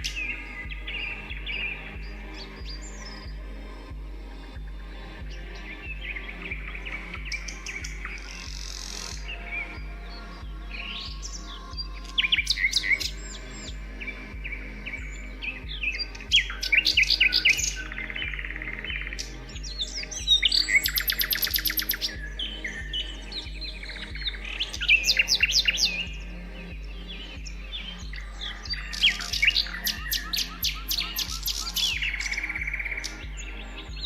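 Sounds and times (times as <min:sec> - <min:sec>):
songbirds chirping and singing: 0:00.0 - 0:34.0
buzzy bird trill: 0:10.7 - 0:34.0.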